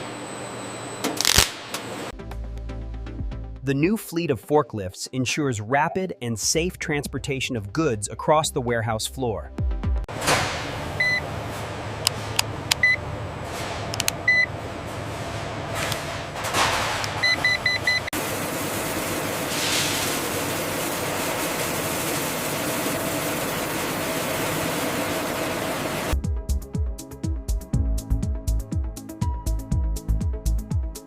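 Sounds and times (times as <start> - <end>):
forklift running: 10.1 - 26.2
machinery hum: 10.1 - 26.2
electronic warning beeps: 11.0 - 11.2, 12.7 - 13.0, 14.0 - 14.5, 17.2 - 18.1.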